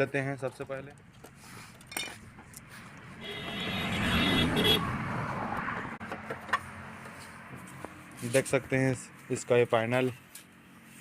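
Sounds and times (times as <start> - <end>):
motor vehicle passing by: 2.6 - 11.0.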